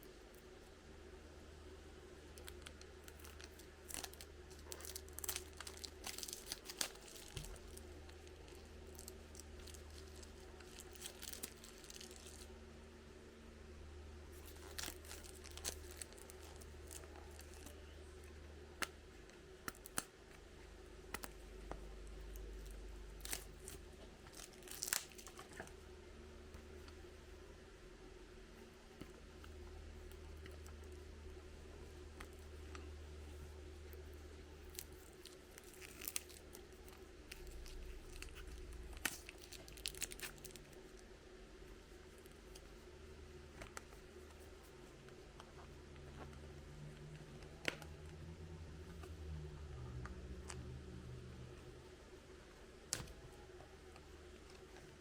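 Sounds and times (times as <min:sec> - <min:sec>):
steady low hum: 0:00.0 - 0:55.0
crinkling and tearing: 0:02.3 - 0:12.5, 0:14.3 - 0:20.5, 0:21.1 - 0:25.8, 0:31.7 - 0:41.1.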